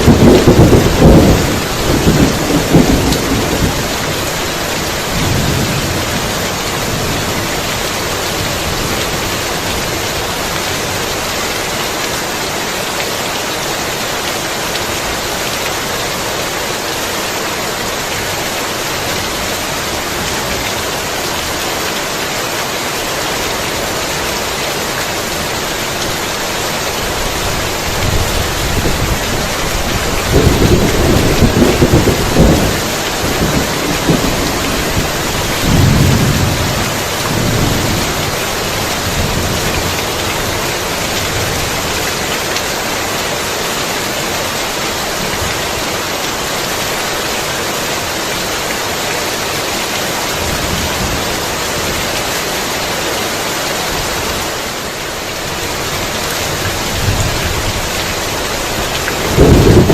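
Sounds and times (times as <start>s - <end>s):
thunder rumbling: 0.0s - 9.8s, 27.1s - 41.8s, 56.5s - 59.9s
heavy rain: 0.0s - 59.9s.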